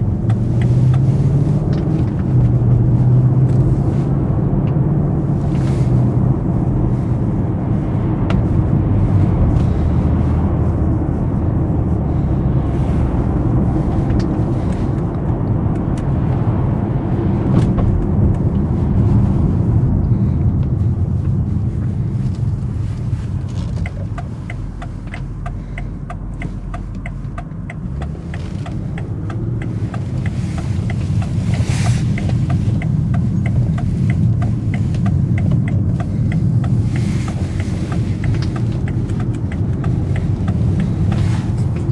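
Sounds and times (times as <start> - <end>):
car engine droning while driving: 0.0 - 41.9.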